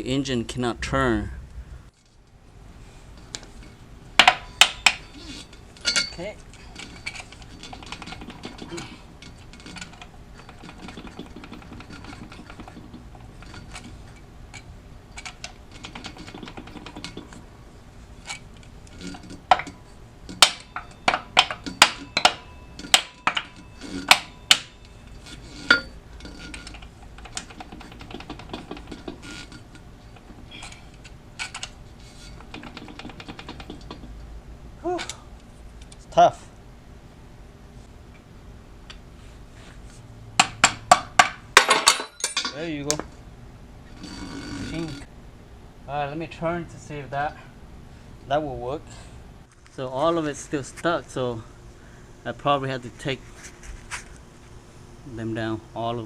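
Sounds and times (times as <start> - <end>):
metal tools clinking and scraping: 3.6 - 17.4, 18.2 - 34.1, 41.6 - 43.0.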